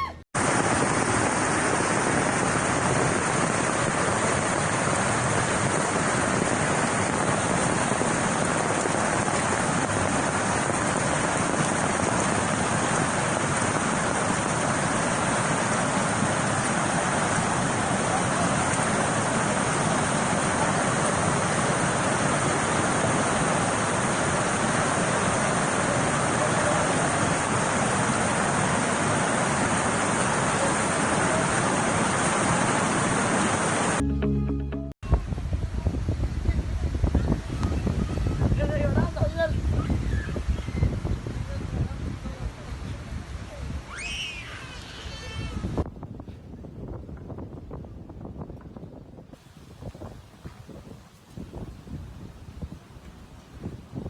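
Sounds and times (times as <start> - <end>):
heavy rain falling: 0.4 - 34.0.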